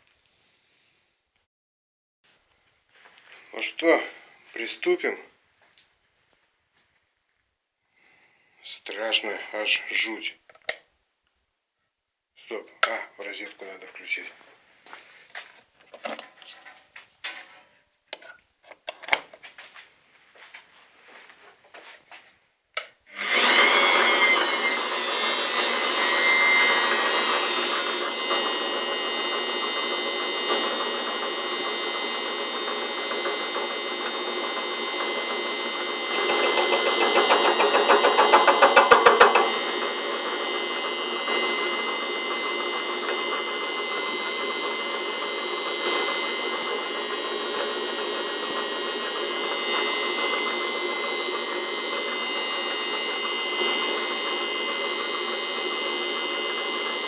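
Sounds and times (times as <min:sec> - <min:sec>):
lathe whining: 0:22.8 - 0:57.0.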